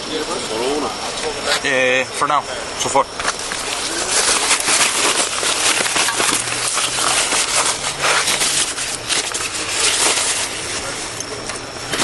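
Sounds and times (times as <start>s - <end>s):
close rustling and crackling: 3.1s - 12.0s.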